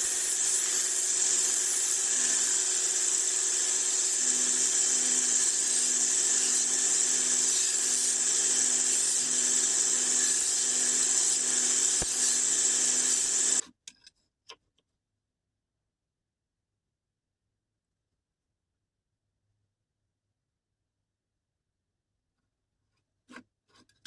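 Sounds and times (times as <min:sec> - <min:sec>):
small electric motor humming: 0:00.0 - 0:13.6.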